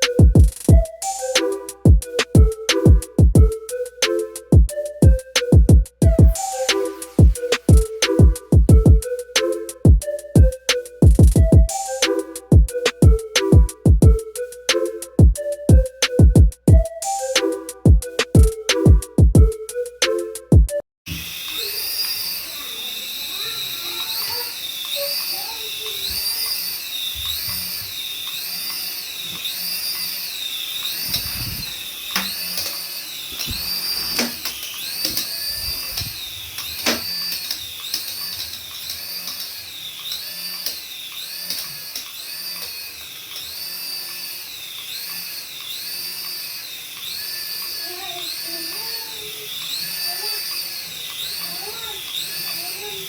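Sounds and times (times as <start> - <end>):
toy helicopter rotor whining: 0.0 - 18.9, 21.1 - 53.0.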